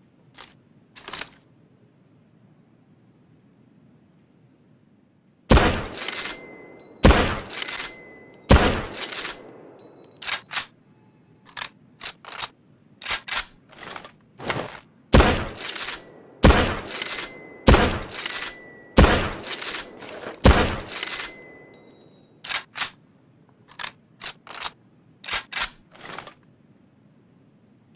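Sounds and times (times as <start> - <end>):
rifle bolt clicking: 5.5 - 10.7, 11.5 - 14.1, 15.2 - 23.0, 23.7 - 26.4
rifle shots ringing: 5.5 - 10.7, 15.1 - 22.9.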